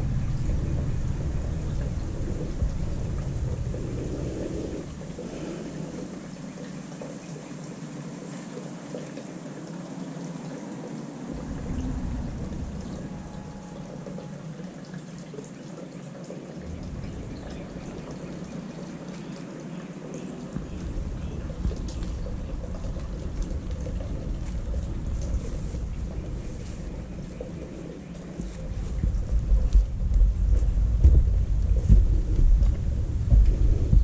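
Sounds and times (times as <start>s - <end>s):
low rumble: 0.0s - 6.3s, 11.3s - 15.0s, 16.6s - 19.4s, 20.6s - 34.0s
water pouring and trickling: 0.0s - 34.0s.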